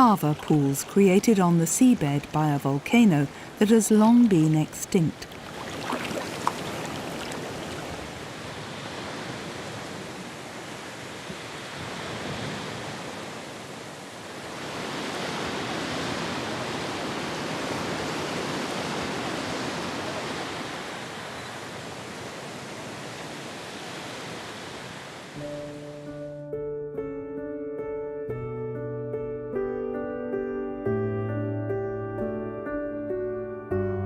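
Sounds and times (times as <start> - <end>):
sea surf washing against rock: 0.0 - 25.4.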